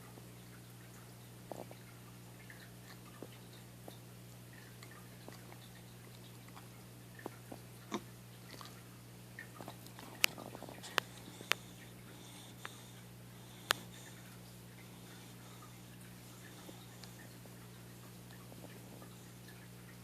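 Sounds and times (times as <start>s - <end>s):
steady low hum: 0.0s - 20.0s
puppy mouth clicks and smacks: 9.4s - 11.9s.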